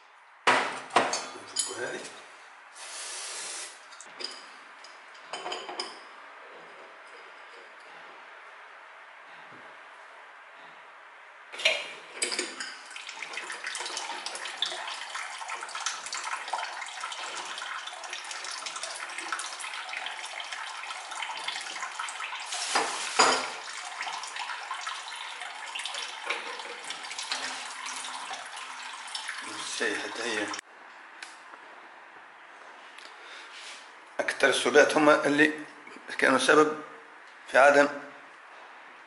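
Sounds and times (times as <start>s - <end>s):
water rushing from tap: 12.9s - 30.6s.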